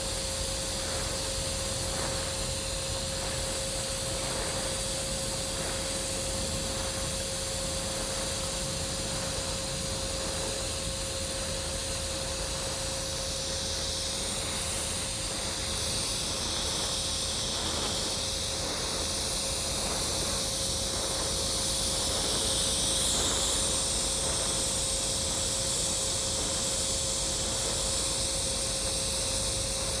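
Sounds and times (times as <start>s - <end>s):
constant tone: 0.0s - 30.0s
welding arc hissing: 0.0s - 30.0s.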